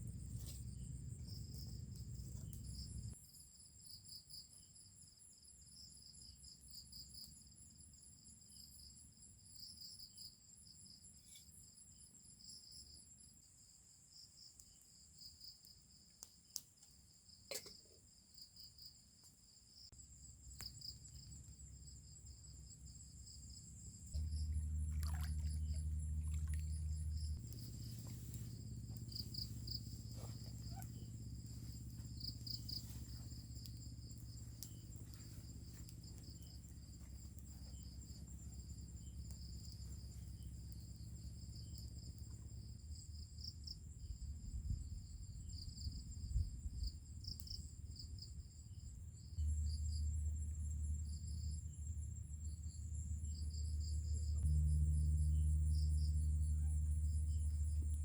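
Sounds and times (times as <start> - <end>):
night insects chirping: 0.0 - 58.0
low rumble: 24.1 - 41.3, 49.4 - 58.0.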